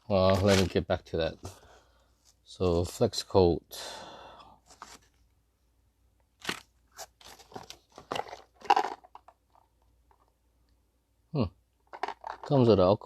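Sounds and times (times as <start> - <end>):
packaging crinkling and crunching: 6.4 - 9.6.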